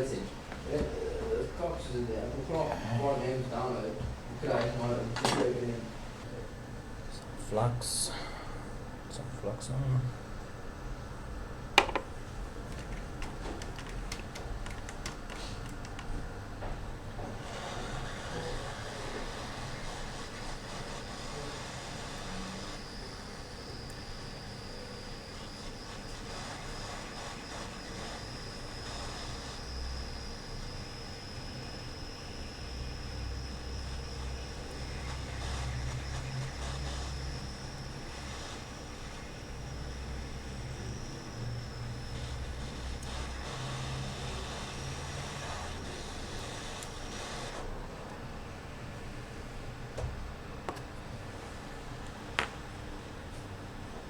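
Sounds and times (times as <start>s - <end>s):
low fan hum: 0.0s - 54.0s
hot air blower rushing: 17.2s - 48.1s.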